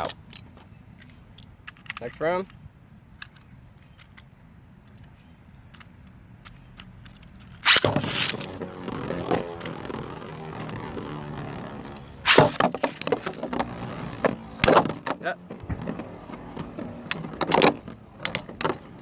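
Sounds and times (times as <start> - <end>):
spinning tops whirring and scraping: 7.6 - 14.7
spinning tops ripped from launchers: 7.6 - 15.1.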